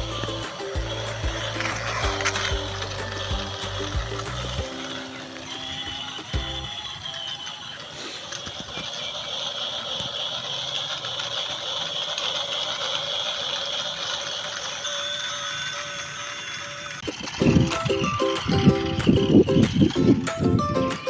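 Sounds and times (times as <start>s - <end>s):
background music with beat: 0.0s - 6.7s, 17.4s - 21.0s
small electric motor whirring: 10.6s - 17.0s.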